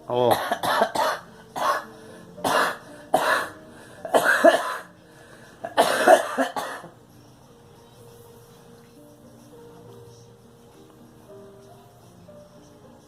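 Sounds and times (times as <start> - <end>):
girl coughing: 0.3 - 4.9, 5.7 - 7.0.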